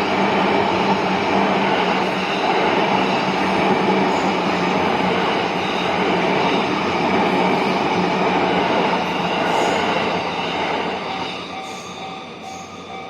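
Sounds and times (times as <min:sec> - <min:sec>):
train wheels rumbling on rail: 0:00.0 - 0:13.0.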